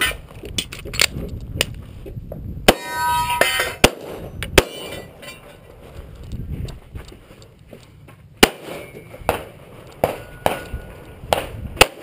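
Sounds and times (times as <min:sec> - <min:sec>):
steel targets clanging: 0:02.7 - 0:03.8, 0:04.6 - 0:05.7, 0:08.6 - 0:11.0
pistol shots: 0:08.4 - 0:12.0.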